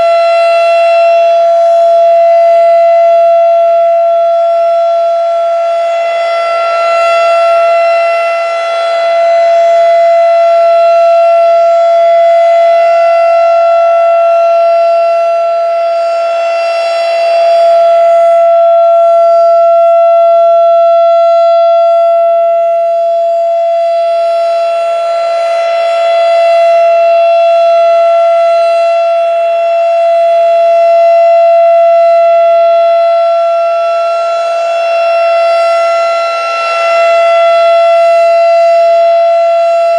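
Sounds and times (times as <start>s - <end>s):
rotating warning siren steady tone: 0.0s - 39.9s.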